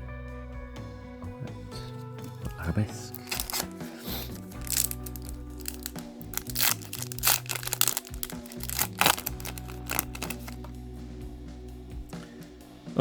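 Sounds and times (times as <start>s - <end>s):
background music: 0.0s - 13.0s
foil wrapper crinkling and tearing: 3.2s - 3.7s, 4.4s - 10.6s.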